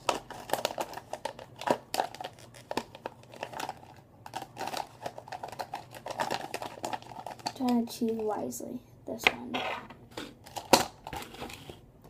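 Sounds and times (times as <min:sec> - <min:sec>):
plastic containers rattling: 0:00.0 - 0:08.3.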